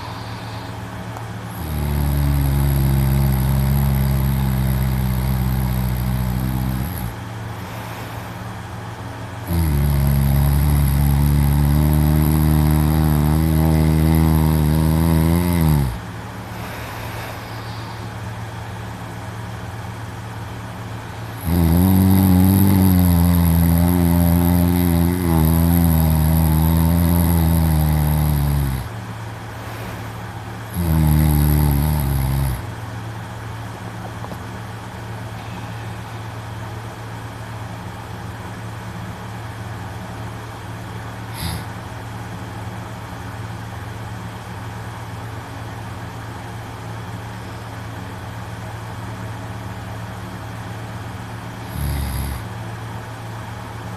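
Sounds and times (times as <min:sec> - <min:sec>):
man snoring loudly: 0:00.0 - 0:00.8, 0:01.4 - 0:08.4, 0:09.4 - 0:18.2, 0:21.2 - 0:29.0, 0:30.6 - 0:32.7, 0:41.3 - 0:41.8, 0:51.6 - 0:52.5
quiet steady hum: 0:00.0 - 0:53.9.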